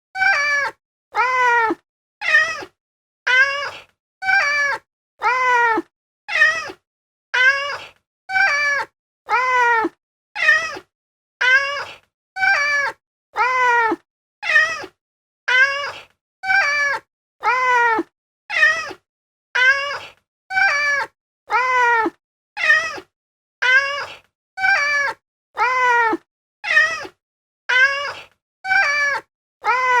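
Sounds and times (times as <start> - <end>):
cat meowing: 0.2 - 2.7, 3.3 - 6.8, 7.4 - 14.9, 15.5 - 19.0, 19.6 - 30.0.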